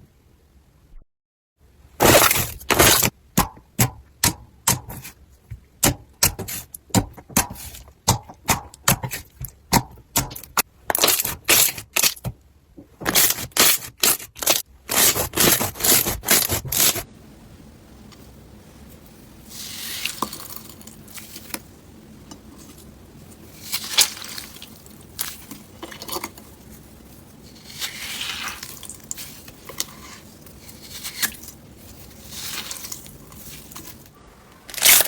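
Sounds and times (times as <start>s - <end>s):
crunchy slime crackling: 2.0s - 3.2s, 5.8s - 12.3s, 13.0s - 17.1s, 23.4s - 35.0s.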